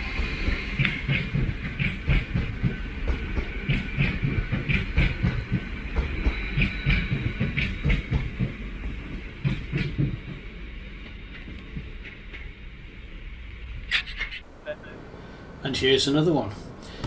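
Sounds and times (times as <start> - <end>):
train wheels clattering on rails: 0.0 - 12.8.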